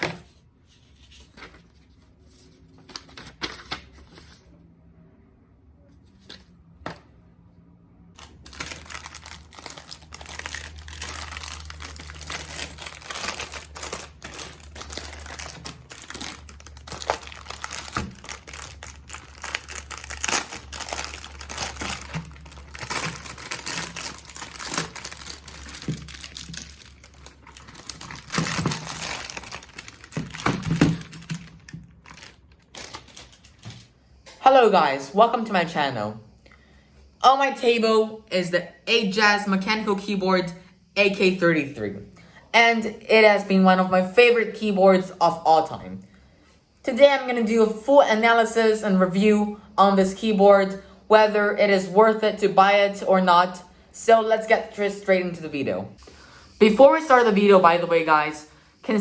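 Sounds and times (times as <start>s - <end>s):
packaging crinkling and rustling: 8.2s - 33.9s.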